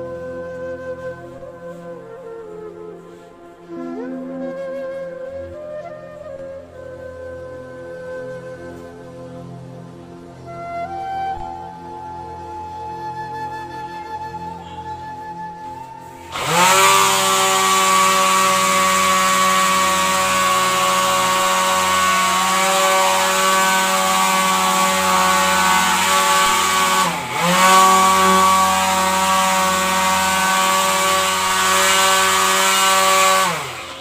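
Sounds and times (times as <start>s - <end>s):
small electric motor whining: 16.0s - 34.0s.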